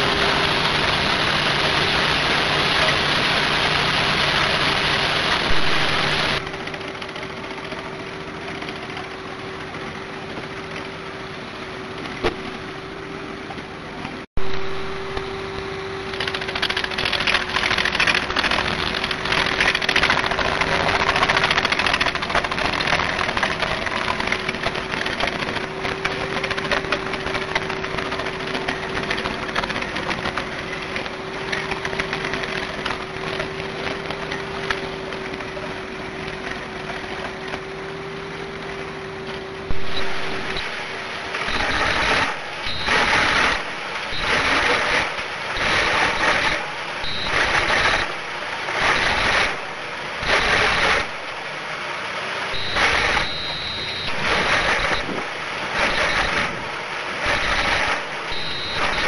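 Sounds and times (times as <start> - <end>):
wood chipper humming: 0.0 - 59.0
crackle of wood chipping: 16.0 - 37.7.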